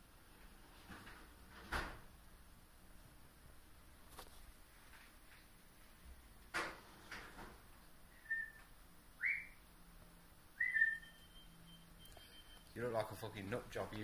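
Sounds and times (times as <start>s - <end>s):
person whistling short notes: 8.2s - 8.6s, 10.6s - 11.5s.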